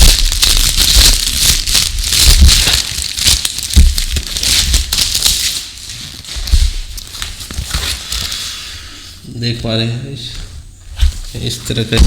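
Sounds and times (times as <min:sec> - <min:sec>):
low thumps from handling package: 0:00.0 - 0:05.4, 0:11.0 - 0:12.0
packaging rustling and crinkling: 0:00.0 - 0:08.6.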